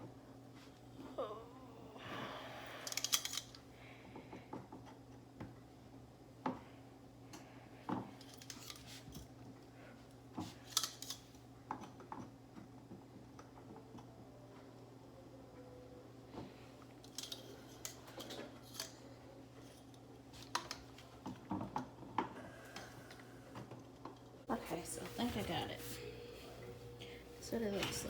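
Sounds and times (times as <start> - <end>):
clicks and knocks of parts: 2.8 - 3.6, 7.3 - 9.3, 10.4 - 14.1, 17.0 - 19.0, 19.6 - 22.3
low hum: 24.5 - 28.0.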